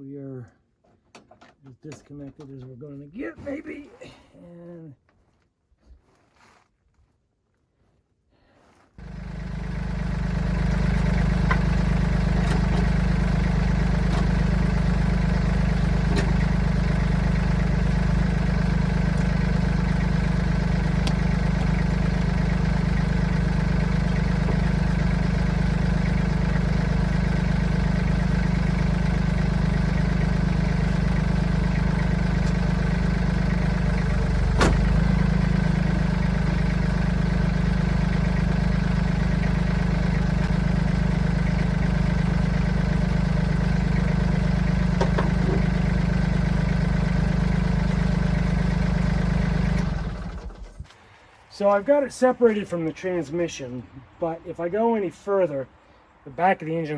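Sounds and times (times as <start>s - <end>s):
engine idling: 9.0s - 51.1s.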